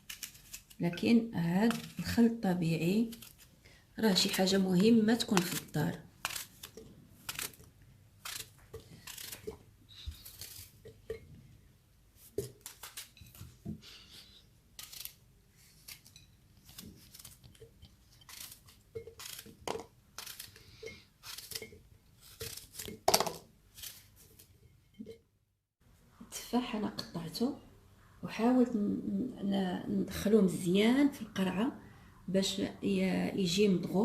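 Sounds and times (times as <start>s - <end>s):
apple pieces knocking in bottle: 22.8s - 23.5s.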